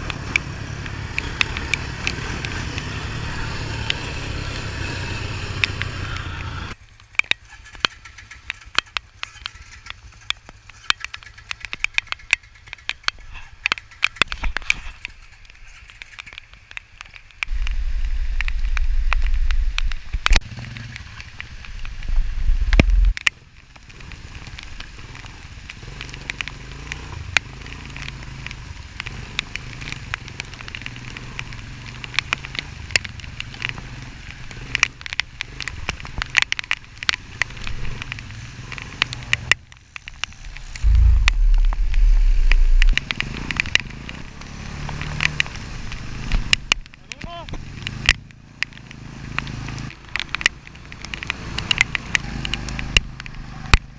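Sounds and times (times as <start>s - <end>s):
crackling and sharp ticks: 0.0s - 53.9s
loud low rumbles: 17.5s - 19.8s, 40.3s - 43.8s
engine drone: 40.0s - 46.2s.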